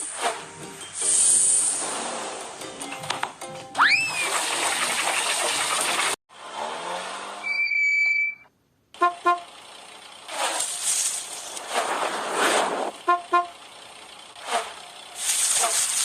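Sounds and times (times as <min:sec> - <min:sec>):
steady hiss: 0:00.0 - 0:02.4, 0:15.2 - 0:16.0
vehicle horn toots: 0:09.0 - 0:09.5, 0:13.0 - 0:13.6.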